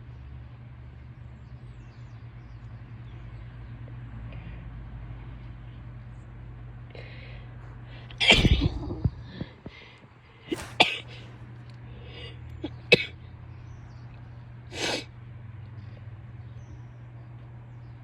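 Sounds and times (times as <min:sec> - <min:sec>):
quick breaths in: 0:07.0 - 0:12.5, 0:14.7 - 0:15.1
woman sneezing: 0:08.2 - 0:08.9, 0:10.5 - 0:11.2.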